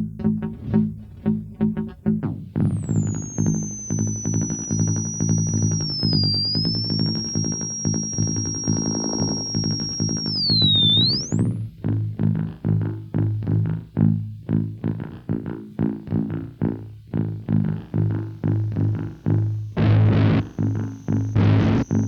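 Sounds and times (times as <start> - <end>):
guitar with warbling flanger: 0.3 - 11.6, 17.8 - 22.0
high electronic whistle: 2.6 - 11.6, 18.2 - 22.0.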